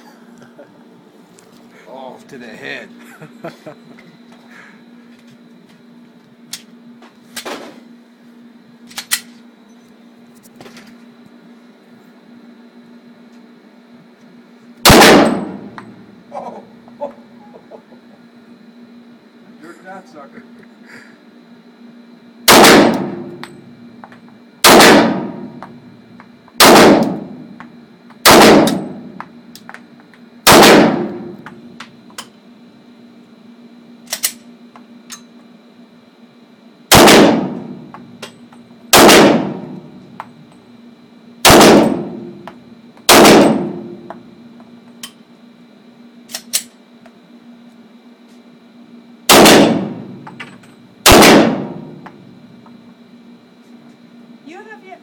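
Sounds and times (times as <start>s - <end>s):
pistol shots with echo: 14.9s - 15.7s, 22.5s - 23.3s, 24.6s - 25.5s, 26.6s - 27.3s, 28.2s - 29.0s, 30.5s - 31.3s, 36.9s - 37.7s, 38.9s - 39.8s, 41.4s - 42.2s, 43.1s - 43.9s, 49.3s - 50.1s, 51.0s - 51.9s.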